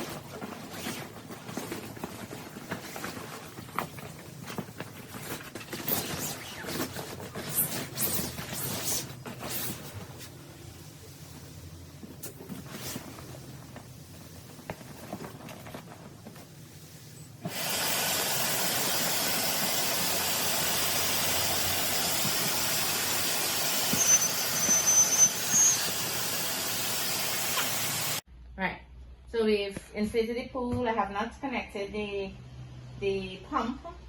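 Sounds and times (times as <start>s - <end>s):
electric air pump blowing: 17.4s - 28.2s
high squeaks: 23.8s - 26.2s.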